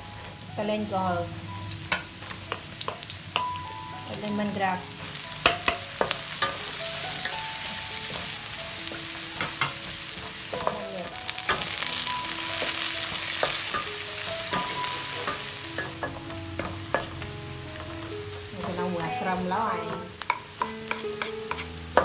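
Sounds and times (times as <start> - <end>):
food sizzling in a pan: 0.0 - 22.0
spatula scraping a pan: 20.0 - 22.0.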